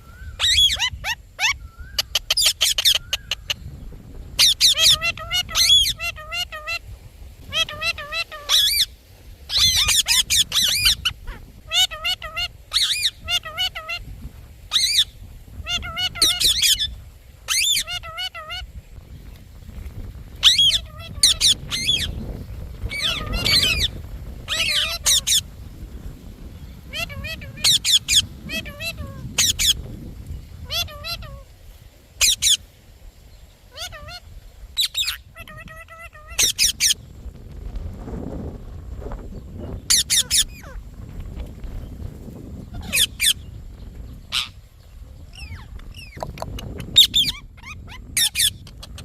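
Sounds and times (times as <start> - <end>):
parrot calling in shrill bursts: 0.1 - 3.6, 4.4 - 14.1, 14.7 - 18.7, 20.4 - 22.2, 22.9 - 25.5, 26.9 - 29.8, 30.6 - 31.5, 32.2 - 32.6, 33.7 - 37.0, 39.9 - 40.8, 42.7 - 43.4, 44.3 - 44.6, 46.9 - 49.0
parakeet squawking: 0.4 - 3.6, 4.4 - 6.8, 7.5 - 8.9, 9.5 - 14.0, 14.7 - 16.9, 17.5 - 18.7, 20.4 - 22.2, 22.9 - 25.4, 26.9 - 29.8, 30.6 - 31.4, 33.7 - 34.2, 34.8 - 37.0, 39.9 - 40.8, 42.7 - 43.4, 44.3 - 44.6, 46.8 - 49.0.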